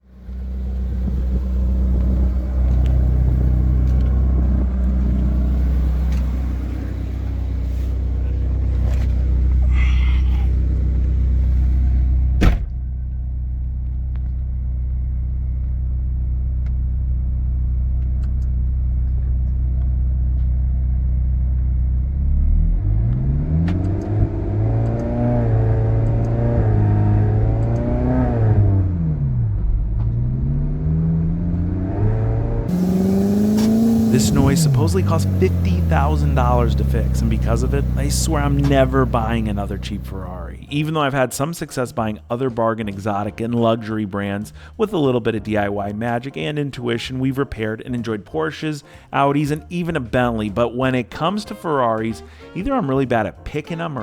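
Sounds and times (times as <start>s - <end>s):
engine revving: 0.0s - 12.8s, 21.8s - 40.7s
car engine running: 0.0s - 40.7s.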